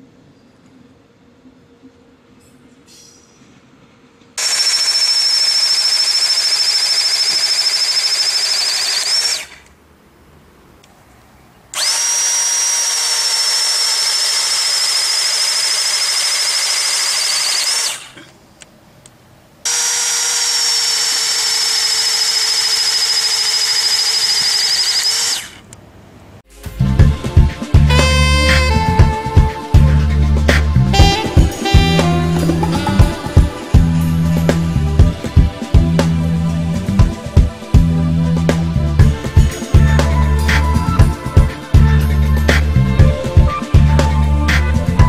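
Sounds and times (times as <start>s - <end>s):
high-speed electric motor whine: 4.4s - 9.7s, 11.8s - 18.3s, 19.7s - 25.8s.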